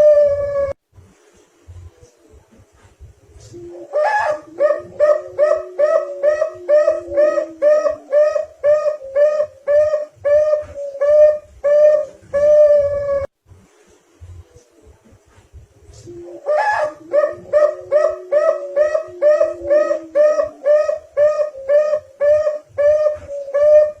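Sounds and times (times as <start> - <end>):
dove cooing: 0.0 - 0.8, 3.3 - 13.3, 15.9 - 24.0.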